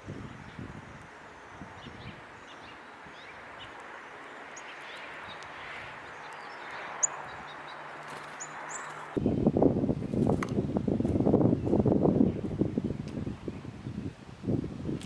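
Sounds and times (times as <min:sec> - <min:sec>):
steady outdoor hiss: 0:00.0 - 0:15.0
high bird chirps: 0:01.4 - 0:09.4.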